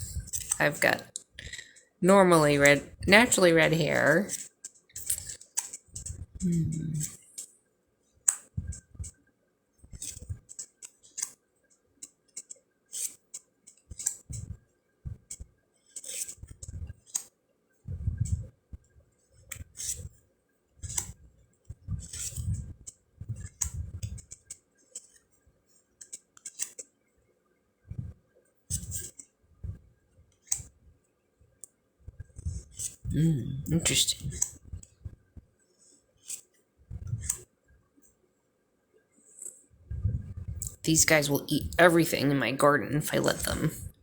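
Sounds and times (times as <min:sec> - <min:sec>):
cards flipping and sliding: 0:00.3 - 0:00.6, 0:04.3 - 0:06.1, 0:10.0 - 0:11.4, 0:12.4 - 0:13.2, 0:15.9 - 0:17.3, 0:22.0 - 0:22.5, 0:26.0 - 0:26.9, 0:36.2 - 0:36.5.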